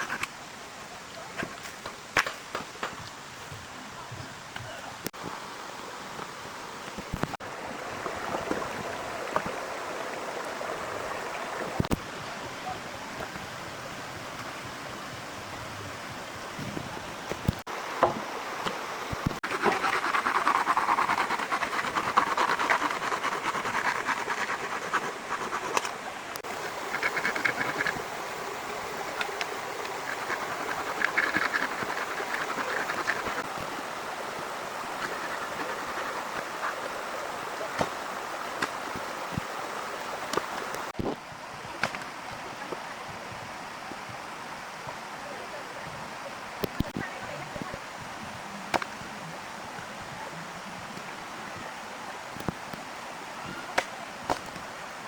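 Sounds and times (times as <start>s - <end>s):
steady rain falling: 25.8s - 55.0s.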